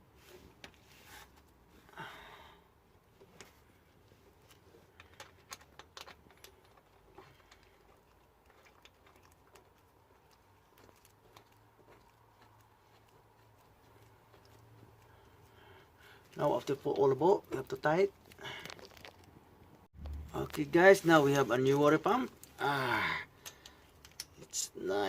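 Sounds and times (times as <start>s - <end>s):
small metal clicks and taps: 23.4s - 24.4s.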